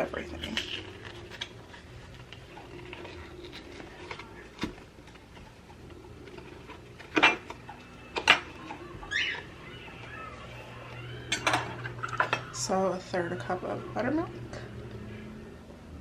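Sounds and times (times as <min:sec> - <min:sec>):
dishes and utensils clinking: 0:07.0 - 0:08.8, 0:11.2 - 0:12.7.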